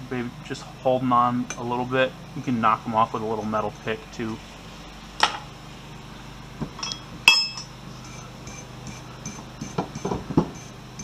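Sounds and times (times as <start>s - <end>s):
metal tools clinking on metal: 6.8s - 9.4s.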